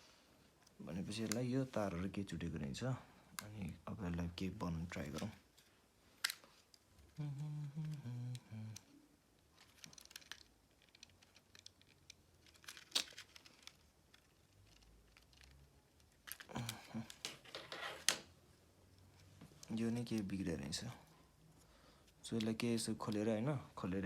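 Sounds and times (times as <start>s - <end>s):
faint rustling of parts: 0.0s - 23.9s
man humming: 7.0s - 9.0s.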